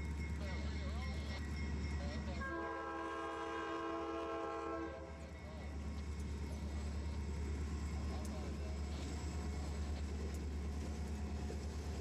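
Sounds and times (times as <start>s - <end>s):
locomotive air horn chord: 2.4s - 5.1s.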